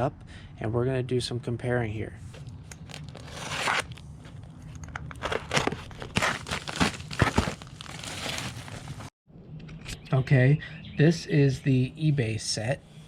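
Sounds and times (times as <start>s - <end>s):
packaging crinkling: 2.4s - 9.1s.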